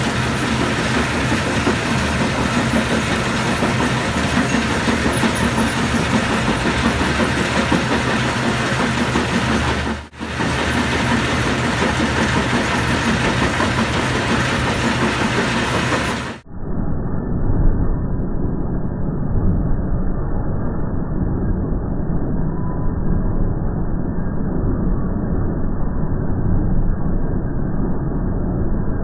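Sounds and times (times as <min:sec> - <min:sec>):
stone crusher rumbling and rattling: 0:00.0 - 0:16.4.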